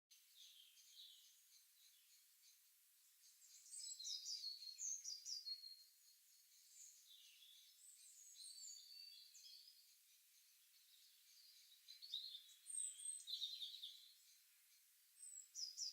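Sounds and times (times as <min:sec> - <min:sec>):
songbirds chirping and singing: 0:00.1 - 0:15.9.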